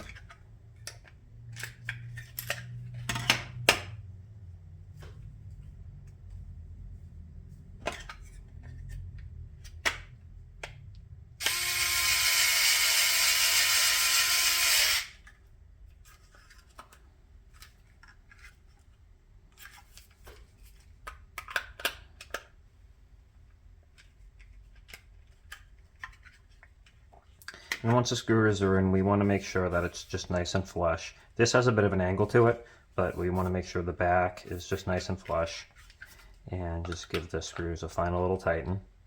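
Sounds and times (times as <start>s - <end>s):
electric drill-driver running: 11.4s - 15.2s.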